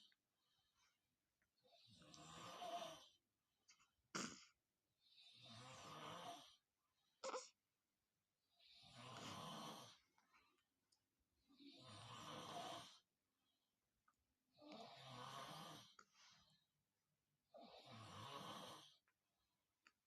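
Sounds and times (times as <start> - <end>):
man snoring: 1.8 - 3.2, 5.2 - 6.6, 8.7 - 10.0, 11.7 - 13.0, 14.7 - 16.0, 17.6 - 19.0.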